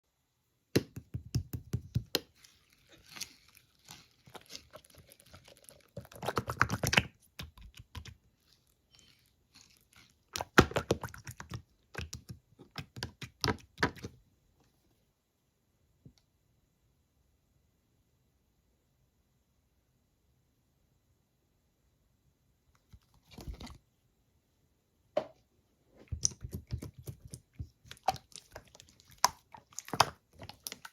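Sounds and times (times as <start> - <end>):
slime clicking and popping: 26.1 - 30.9.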